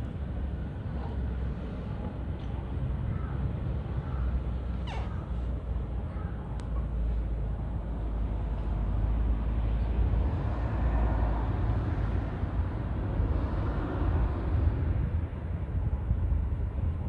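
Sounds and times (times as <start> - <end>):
wind buffeting microphone: 14.2 - 17.0.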